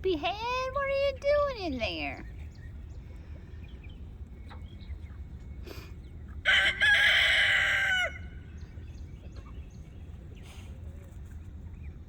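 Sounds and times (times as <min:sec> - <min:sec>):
rooster crowing: 0:06.4 - 0:08.4
faint chick peeps: 0:07.4 - 0:12.0.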